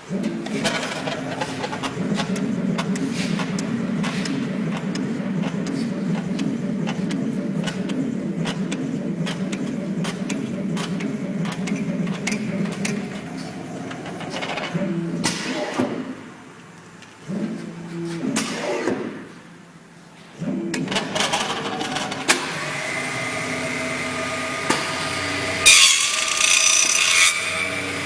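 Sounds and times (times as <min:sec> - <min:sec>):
machine motor hum: 0:00.0 - 0:19.2
sharp clicks and ticks: 0:00.4 - 0:14.8.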